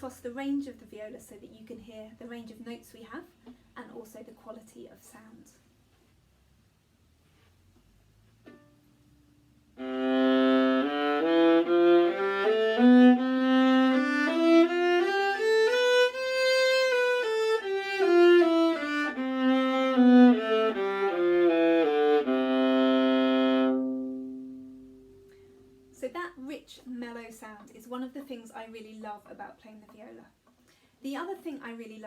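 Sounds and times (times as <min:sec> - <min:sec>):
bowed viola playing a scale: 0:09.8 - 0:25.1.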